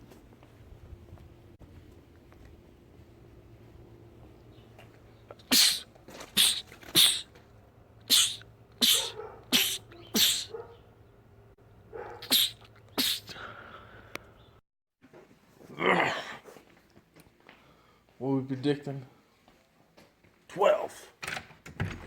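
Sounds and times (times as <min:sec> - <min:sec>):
man sneezing: 0:05.4 - 0:07.3, 0:08.1 - 0:10.5, 0:12.2 - 0:13.5.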